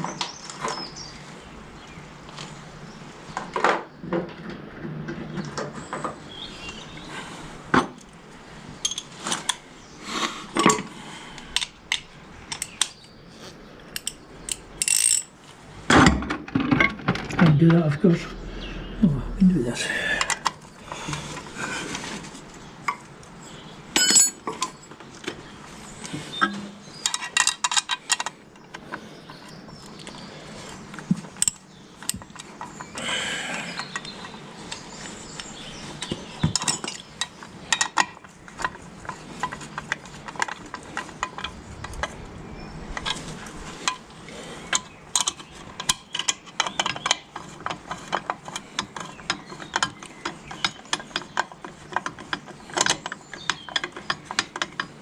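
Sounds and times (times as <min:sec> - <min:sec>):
metal tools clinking: 0:14.0 - 0:15.4.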